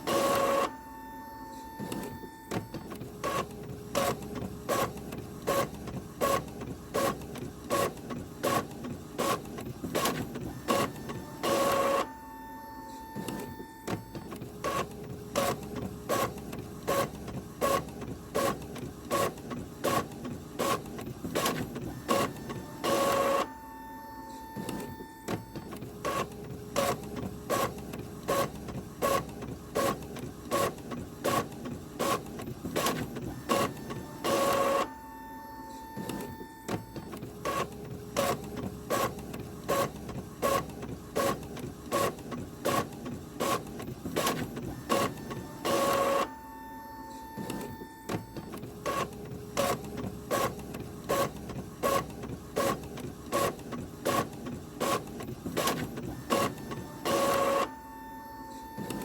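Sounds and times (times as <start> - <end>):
printer mechanical strokes: 0.0 - 59.0
printer whirr: 0.0 - 59.0.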